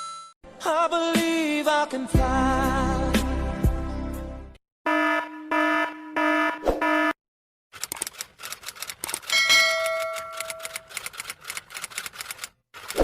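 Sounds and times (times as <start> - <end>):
pulsing buzzer tone: 4.9 - 7.2
typewriter keystrokes clacking: 7.8 - 13.0
typewriter carriage bell ding: 9.2 - 11.1.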